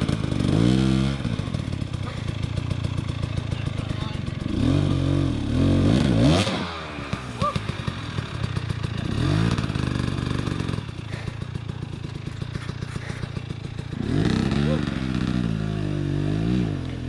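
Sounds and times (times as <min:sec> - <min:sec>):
dirt bike engine revving: 0:00.0 - 0:17.0.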